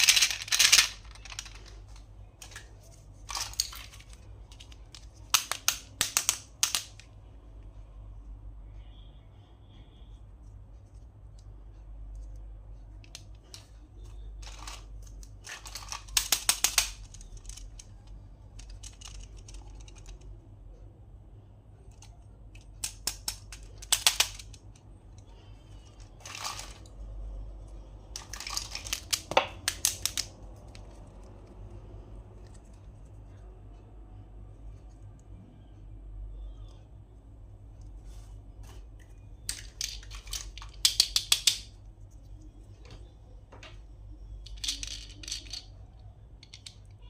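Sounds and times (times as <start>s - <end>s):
handling toys: 0.0s - 7.1s, 13.0s - 20.4s, 21.8s - 33.4s, 37.7s - 47.0s.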